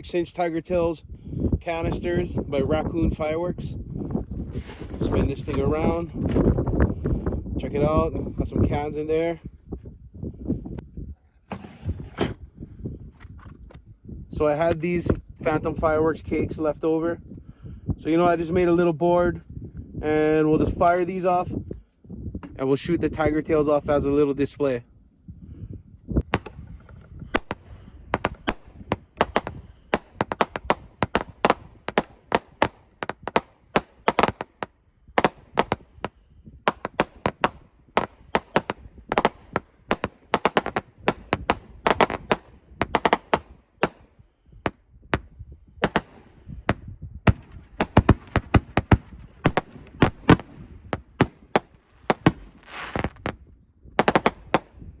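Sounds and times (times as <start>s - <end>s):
fireworks bangs and pops: 4.1s - 6.9s, 26.2s - 55.0s.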